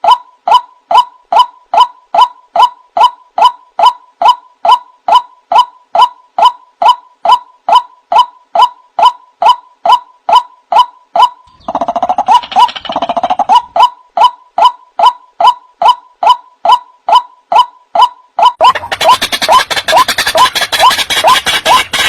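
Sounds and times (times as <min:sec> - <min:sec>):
harsh bird calls: 0:11.2 - 0:13.9, 0:18.6 - 0:22.0
rough lower bird calls: 0:11.2 - 0:14.0, 0:17.1 - 0:22.0.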